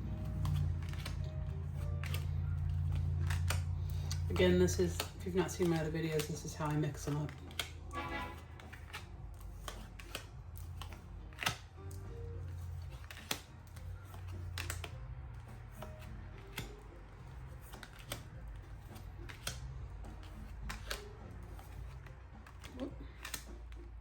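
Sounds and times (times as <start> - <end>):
cards being shuffled: 0.0 - 24.0
soft background music: 0.0 - 24.0.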